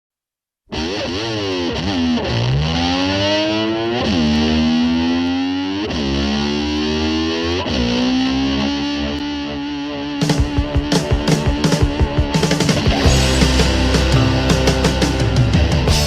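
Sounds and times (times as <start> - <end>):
distorted slide guitar: 0.7 - 16.0.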